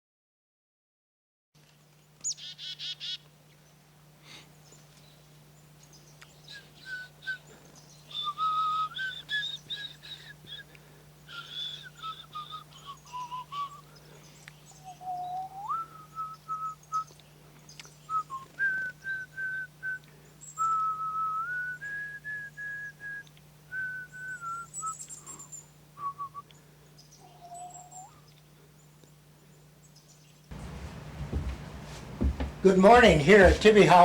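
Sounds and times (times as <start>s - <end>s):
person whistling a tune: 8.1s - 10.7s, 11.3s - 13.8s, 14.9s - 17.1s, 18.1s - 25.0s, 26.0s - 26.5s.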